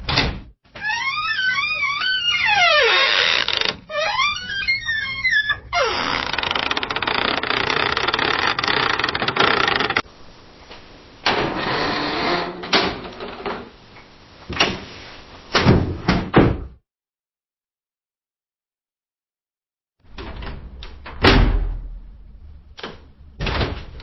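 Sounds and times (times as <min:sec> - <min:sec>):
door creaking: 0:00.0 - 0:10.1, 0:11.2 - 0:13.7.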